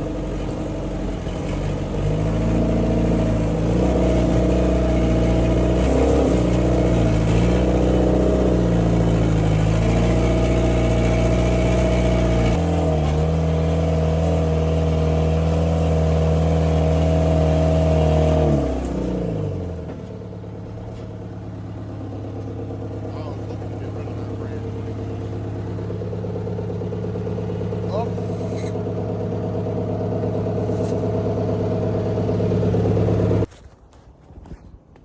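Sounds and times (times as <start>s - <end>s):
diesel engine revving: 0.0s - 33.5s.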